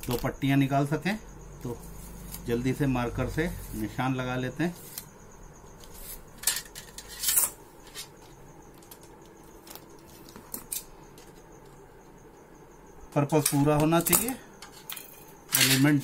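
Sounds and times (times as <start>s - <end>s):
metallic clinks of tin sheet: 13.4s - 16.0s.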